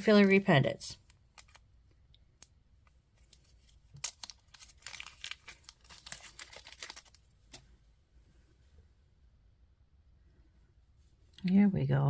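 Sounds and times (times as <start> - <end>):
plastic bag crinkling: 0.0 - 1.9, 3.2 - 7.6.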